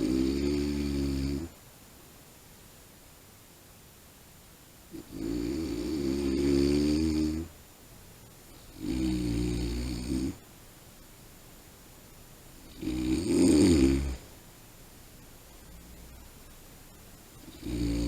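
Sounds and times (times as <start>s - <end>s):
man snoring: 0.0s - 1.5s, 5.0s - 7.5s, 8.8s - 10.4s, 12.7s - 14.2s, 17.5s - 18.0s.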